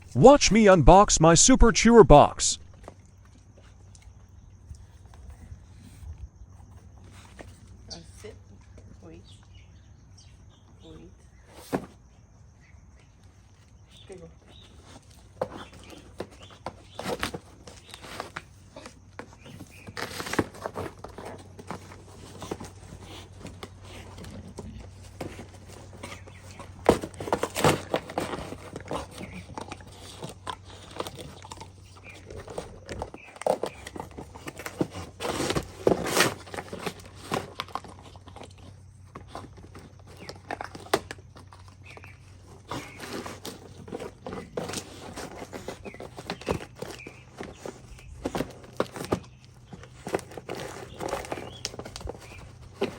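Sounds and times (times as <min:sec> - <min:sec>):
crinkling: 0:14.5 - 0:52.9
dog chewing and crunching: 0:14.5 - 0:52.9.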